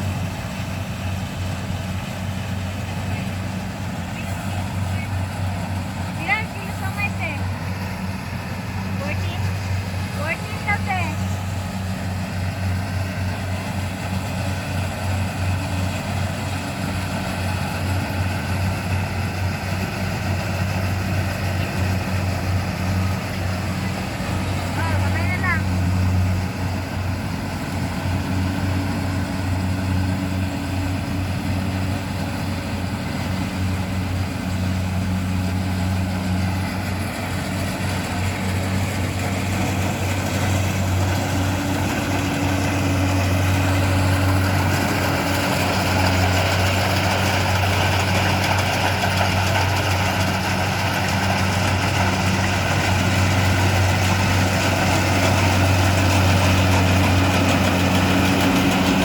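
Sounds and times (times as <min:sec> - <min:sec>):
harvester engine humming: 0:00.0 - 0:59.0
rushing mechanical noise: 0:00.0 - 0:59.0.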